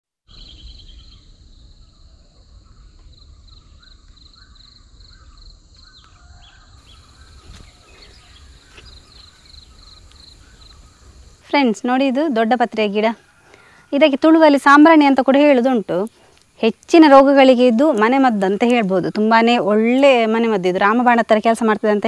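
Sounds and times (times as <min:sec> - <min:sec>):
faint bird chirps: 0:00.3 - 0:14.4
insects chirping in short pulses: 0:00.3 - 0:17.2
steady high insect drone: 0:00.3 - 0:22.0.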